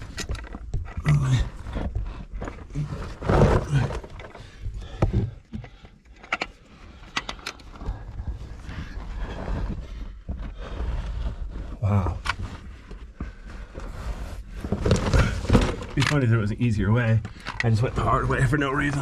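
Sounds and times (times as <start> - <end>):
effortful breaths and grunts: 0.0 - 19.0.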